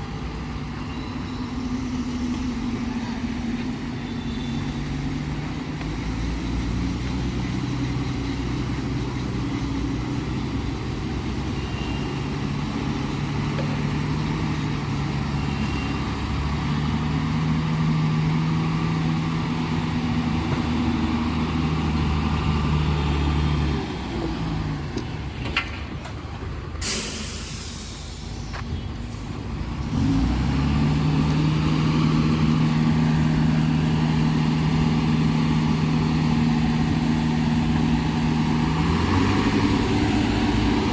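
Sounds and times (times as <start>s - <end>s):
heavy diesel engines running: 0.0s - 40.9s
air brake hiss: 26.8s - 29.4s.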